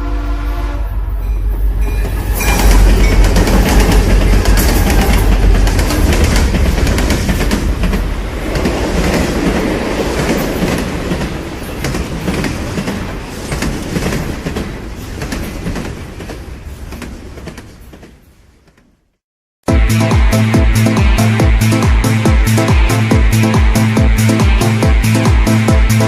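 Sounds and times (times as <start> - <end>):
train wheels clattering on rails: 1.4 - 19.0.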